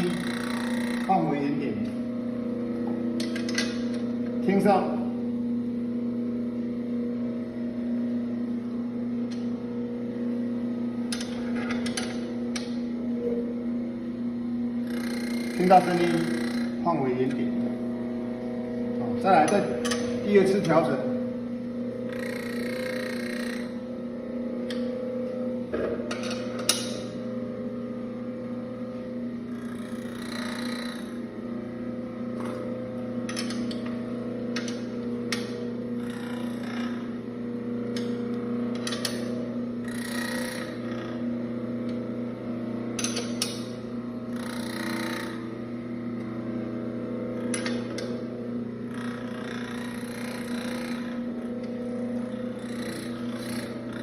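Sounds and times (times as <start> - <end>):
grinder motor humming: 0.0 - 54.0
grinding stones rasping: 52.5 - 54.0.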